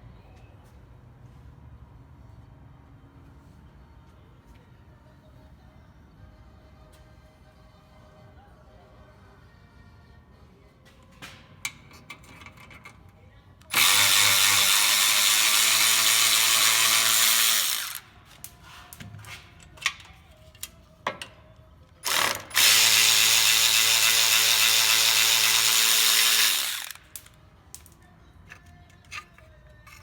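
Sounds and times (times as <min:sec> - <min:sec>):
power tool driving fastener: 0:13.7 - 0:18.1, 0:22.0 - 0:27.3.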